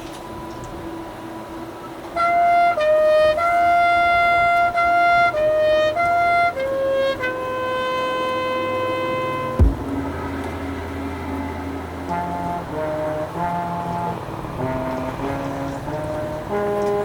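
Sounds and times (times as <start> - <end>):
marching band wind instruments: 0.0 - 17.0.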